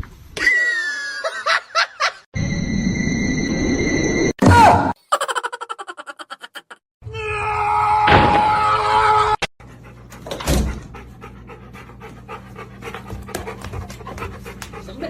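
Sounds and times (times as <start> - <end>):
dog panting: 9.6 - 15.0.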